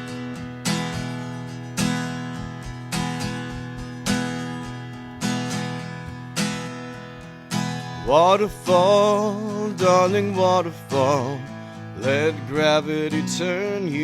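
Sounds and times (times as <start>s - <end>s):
acoustic guitar strumming: 0.0s - 14.0s
person singing: 8.0s - 14.0s.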